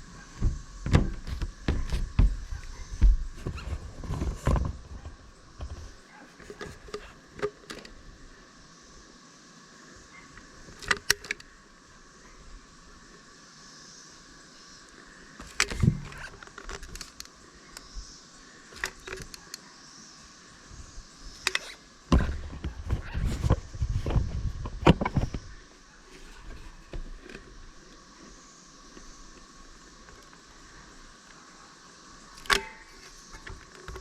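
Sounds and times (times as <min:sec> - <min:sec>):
heavy thumps and bumps: 0:00.3 - 0:05.8
clicks and knocks of tools: 0:05.6 - 0:08.0, 0:10.7 - 0:11.5, 0:15.4 - 0:17.9, 0:18.7 - 0:19.6, 0:32.4 - 0:34.0.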